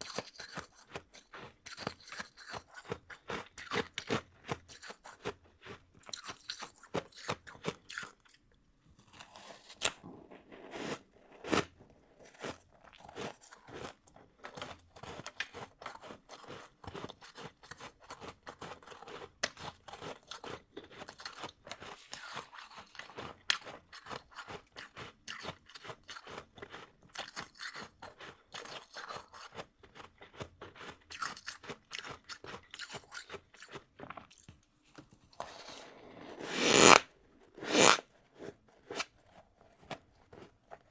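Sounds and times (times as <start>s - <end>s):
chewing crunchy ice: 0.0s - 34.6s, 35.3s - 40.9s.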